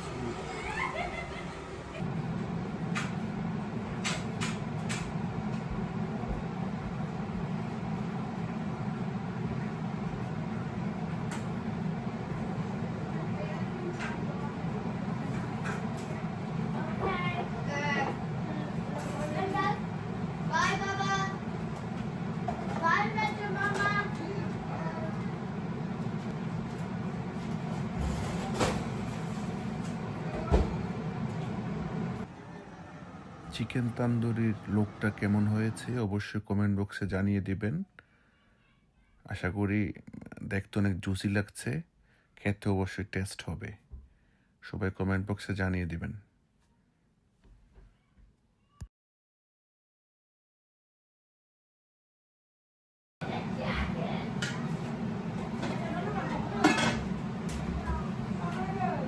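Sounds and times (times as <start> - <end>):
low motor hum: 0.0 - 36.0, 53.2 - 59.0
steady low hum: 53.2 - 59.0.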